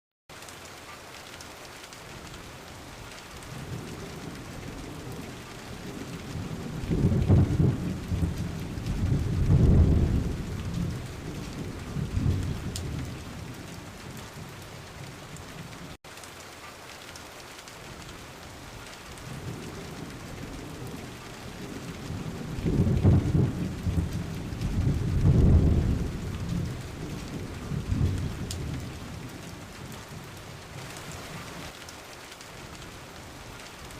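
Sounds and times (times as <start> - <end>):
steady rain: 0.3 - 33.9
rolling thunder: 3.5 - 15.8, 19.2 - 31.3.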